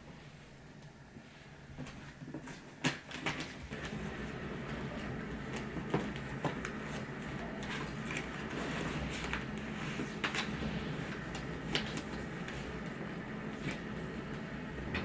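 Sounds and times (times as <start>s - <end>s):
steady low hum: 3.6s - 15.0s.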